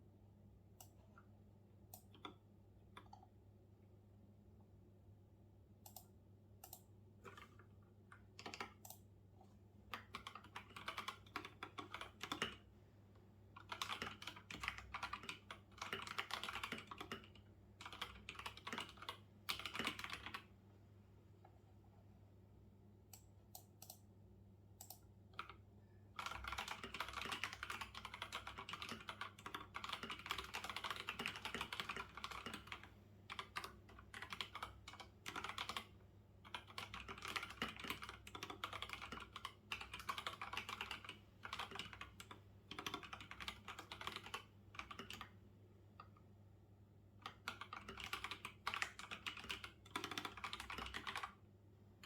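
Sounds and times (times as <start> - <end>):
typing on computer keyboard: 5.8 - 9.1, 9.9 - 12.7, 13.6 - 20.5, 24.8 - 25.6, 26.2 - 45.4, 47.2 - 51.4.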